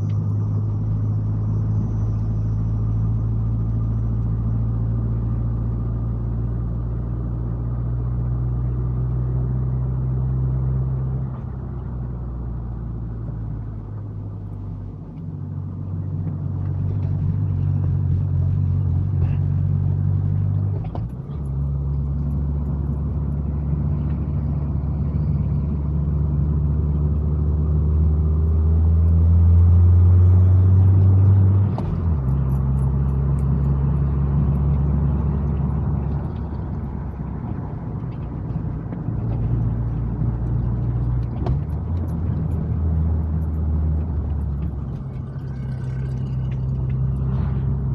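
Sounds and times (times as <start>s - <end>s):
car engine and road drone: 0.0s - 47.9s.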